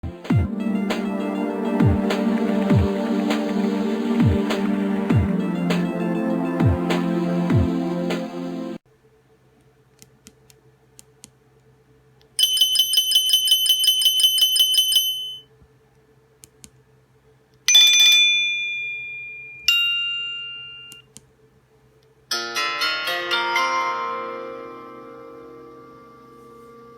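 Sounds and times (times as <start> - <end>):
high pulsing phone ring tone: 12.4 - 15.4, 22.5 - 26.9
melodic ringtone: 22.3 - 26.9.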